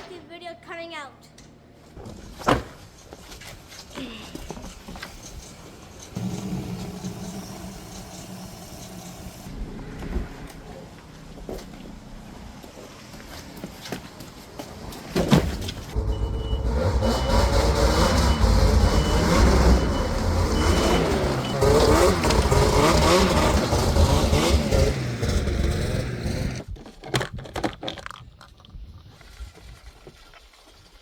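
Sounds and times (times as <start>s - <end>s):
vehicle engine revving: 6.2s - 10.7s, 16.0s - 26.6s
high warning beeps: 16.0s - 22.3s.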